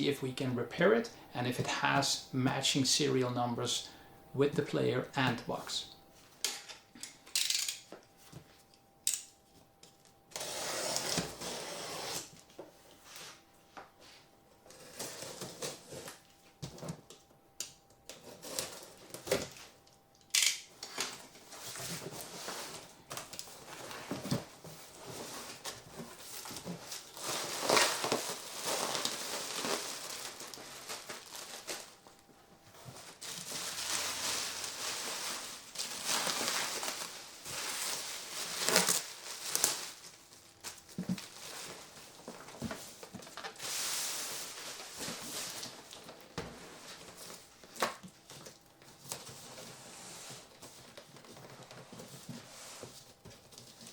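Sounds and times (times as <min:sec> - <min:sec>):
wrapping material rustling: 0:21.2 - 0:53.9.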